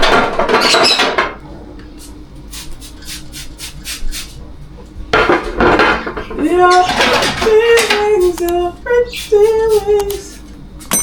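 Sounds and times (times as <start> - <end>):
dishes clinking: 0.0 - 1.4, 5.1 - 8.1.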